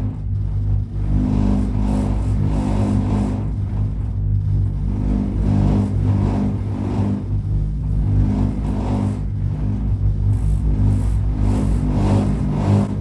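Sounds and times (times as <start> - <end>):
vehicle engine droning hum: 0.0 - 13.0.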